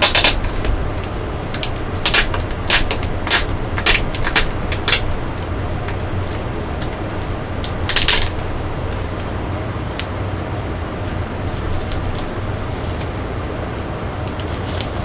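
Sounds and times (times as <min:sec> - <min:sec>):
packaging clicks and rustles: 0:00.0 - 0:09.3
steady low hum: 0:00.0 - 0:15.0.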